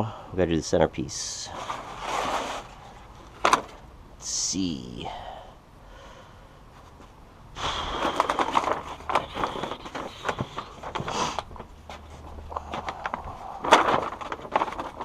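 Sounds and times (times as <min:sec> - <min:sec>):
foil sheet crinkling: 0:12.1 - 0:15.0.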